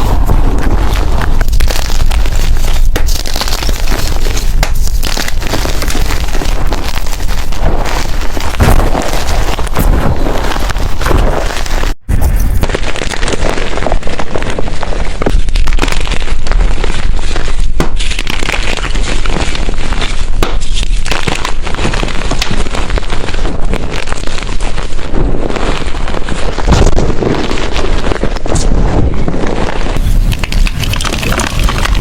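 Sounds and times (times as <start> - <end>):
chalk being crushed by hand: 0.0 - 12.7.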